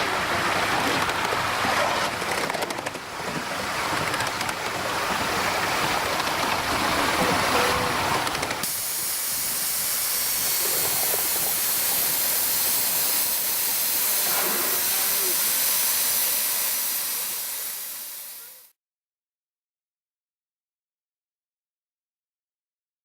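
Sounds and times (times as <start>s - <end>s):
steam hissing: 7.3s - 18.7s.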